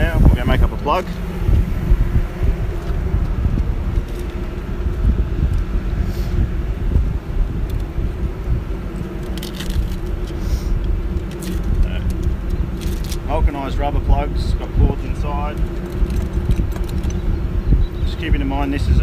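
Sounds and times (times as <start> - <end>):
generator humming: 0.0 - 19.0.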